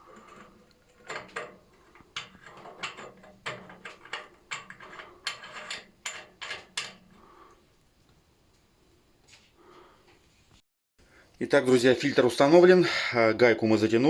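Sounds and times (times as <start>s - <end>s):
metallic clicks and knocks: 0.1s - 7.2s.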